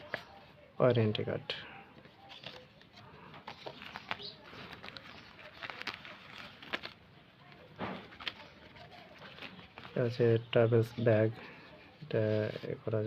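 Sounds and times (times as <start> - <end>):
packaging rustling and clicking: 2.0 - 10.0.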